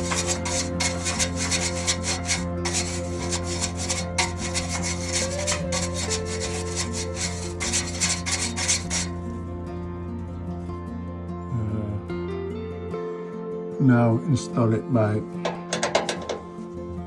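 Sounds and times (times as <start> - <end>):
brush scrubbing blower: 0.0 - 9.1
background music: 0.0 - 17.0.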